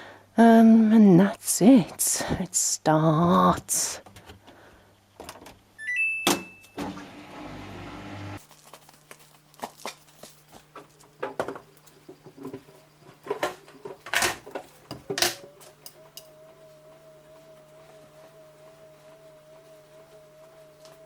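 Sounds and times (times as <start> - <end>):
washing machine motor hum: 6.8 - 8.4, 11.8 - 21.0
wavering whine: 11.7 - 21.0.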